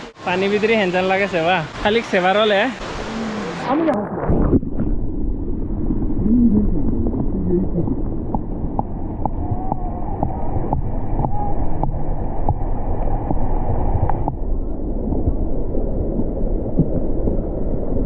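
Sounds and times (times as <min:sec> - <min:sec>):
waterfall rushing: 0:00.0 - 0:04.4.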